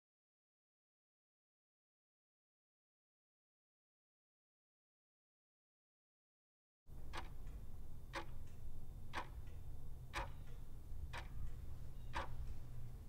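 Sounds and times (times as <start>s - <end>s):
steady ticking: 6.9s - 13.0s.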